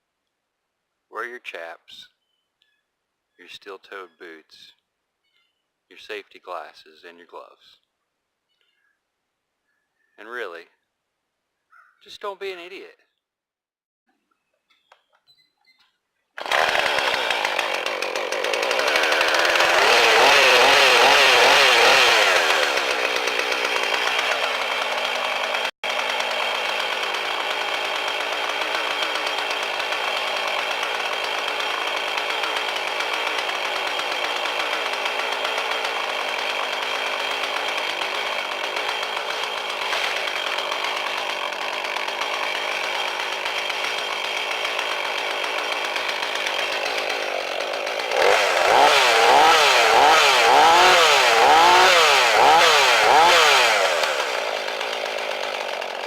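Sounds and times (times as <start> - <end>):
chainsaw cutting log: 16.4 - 56.0.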